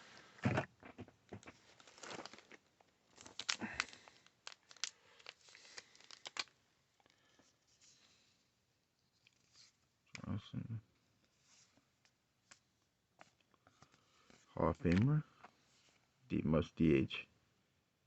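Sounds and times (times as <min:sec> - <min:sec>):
foil wrapper crinkling and tearing: 0:01.7 - 0:07.1.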